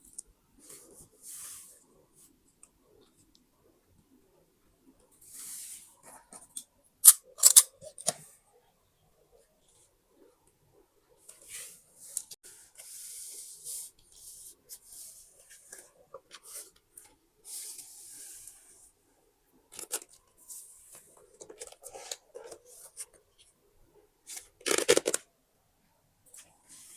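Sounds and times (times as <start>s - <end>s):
paper tearing or rustling: 24.3s - 25.2s.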